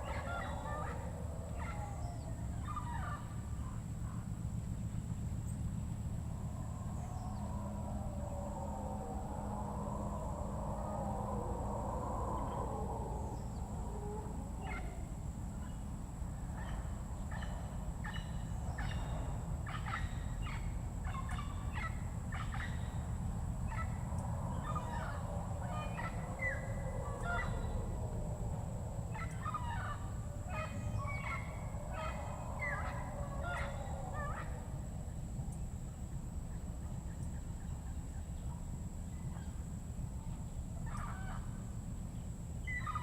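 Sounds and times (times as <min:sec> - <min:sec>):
birds chattering calls: 0:00.0 - 0:09.5, 0:12.4 - 0:35.8
faint high whine: 0:00.0 - 0:43.0
steady low rumble: 0:00.0 - 0:43.0.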